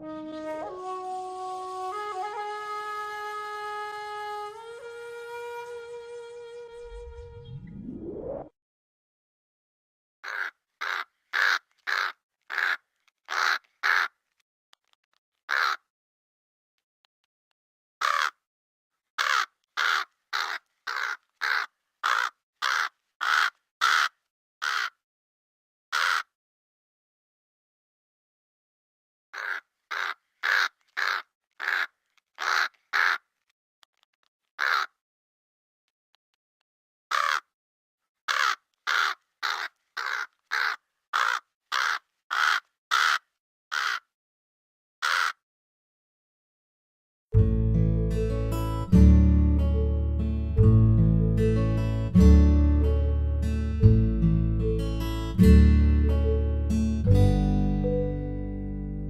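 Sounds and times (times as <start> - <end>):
crow cawing: 10.2 - 14.1, 15.5 - 15.8, 18.0 - 18.4, 19.2 - 25.0, 26.0 - 26.3, 29.4 - 33.2, 34.6 - 35.0, 37.1 - 37.5, 38.3 - 44.1, 45.0 - 45.4.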